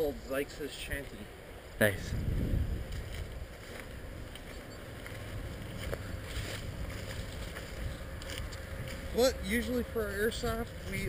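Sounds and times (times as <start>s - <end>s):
wind rumbling on microphone: 1.8s - 11.0s
faint ticks and rustles: 2.8s - 9.2s.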